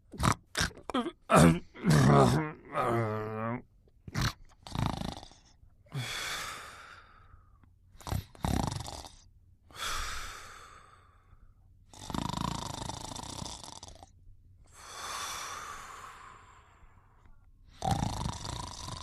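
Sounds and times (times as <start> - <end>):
person snoring: 0.1 - 7.3, 8.0 - 11.3, 11.9 - 14.1, 17.7 - 19.0.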